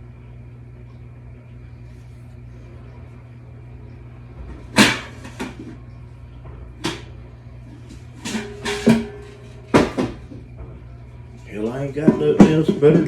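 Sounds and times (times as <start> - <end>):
steady low hum: 0.0 - 13.0
kitchen items knocking: 8.2 - 10.4.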